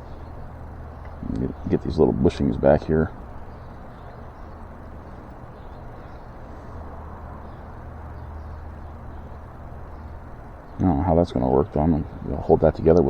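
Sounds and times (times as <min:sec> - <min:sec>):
low outdoor rumble: 0:00.0 - 0:13.0.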